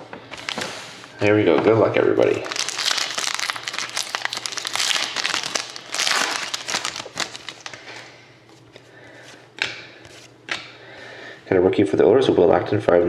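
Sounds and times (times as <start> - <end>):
plastic wrappers tearing and crinkling: 2.2 - 8.1.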